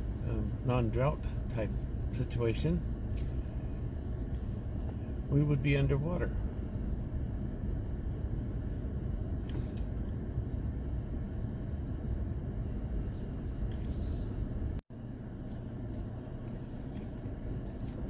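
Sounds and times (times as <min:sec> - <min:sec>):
road and engine rumble in vehicle: 0:00.0 - 0:18.0.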